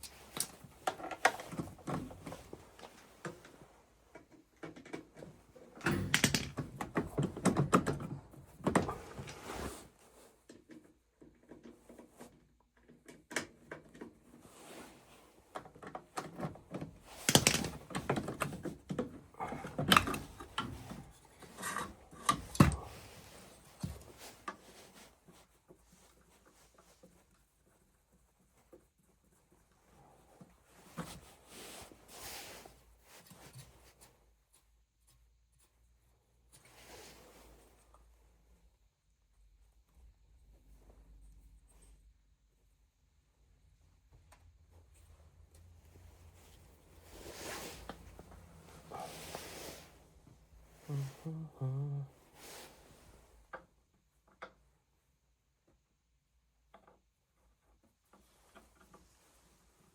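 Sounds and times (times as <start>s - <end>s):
tools knocking and clinking: 5.8s - 8.1s, 17.2s - 19.0s.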